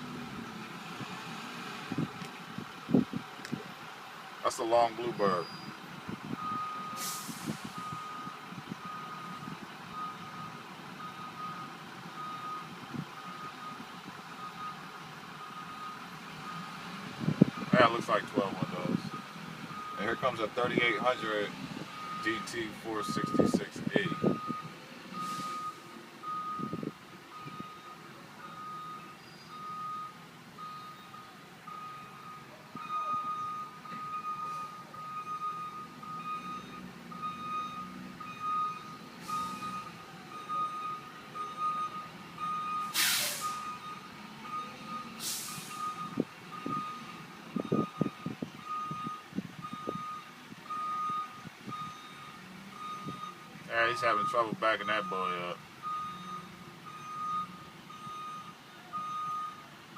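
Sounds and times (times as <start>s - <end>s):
air brake hissing: 7.0s - 7.9s, 25.2s - 25.9s, 42.8s - 43.7s, 45.2s - 45.9s
backup alarm beeping: 17.6s - 59.6s.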